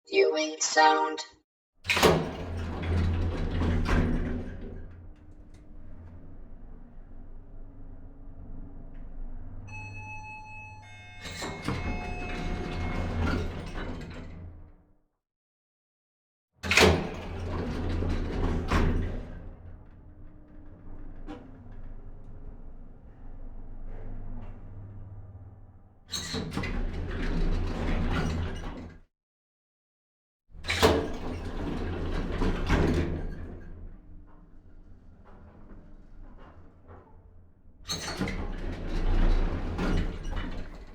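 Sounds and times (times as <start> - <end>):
clear pitched tone: 0.1 - 1.3.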